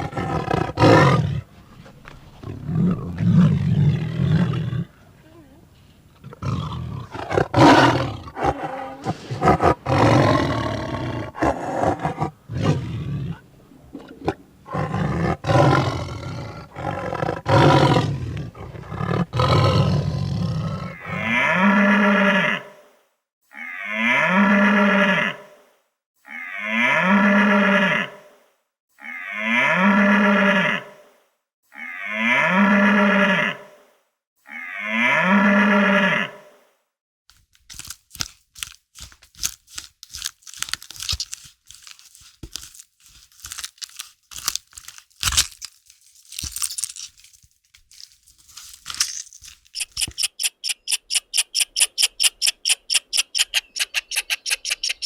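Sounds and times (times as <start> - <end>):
rough animal calls: 6.2 - 22.4, 49.8 - 55.0
drawn-out pitched animal calls: 20.9 - 22.4, 49.8 - 55.0.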